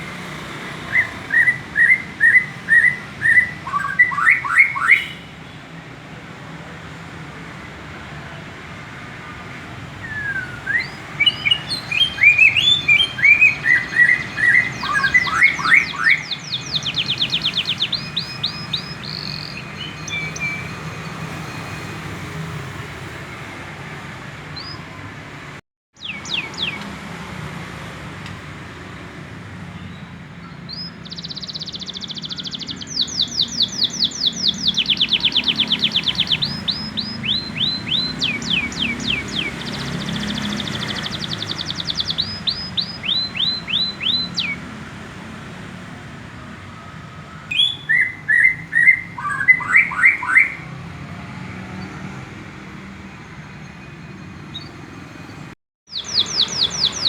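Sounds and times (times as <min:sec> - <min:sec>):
canary singing trills: 0:00.0 - 0:05.4, 0:10.0 - 0:22.2, 0:24.5 - 0:25.0, 0:26.0 - 0:27.2, 0:29.8 - 0:45.1, 0:47.5 - 0:50.9, 0:53.3 - 0:57.0.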